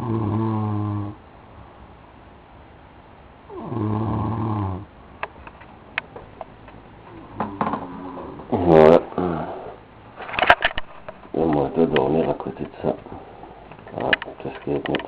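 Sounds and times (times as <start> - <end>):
person snoring: 0.0 - 1.2, 3.5 - 4.9.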